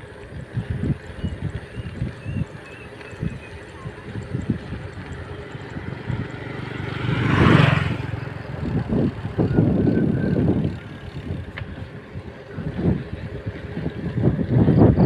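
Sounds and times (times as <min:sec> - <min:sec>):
road traffic noise: 0:00.0 - 0:15.0
wind on microphone: 0:00.0 - 0:15.0
vehicle passing close by: 0:04.0 - 0:14.4.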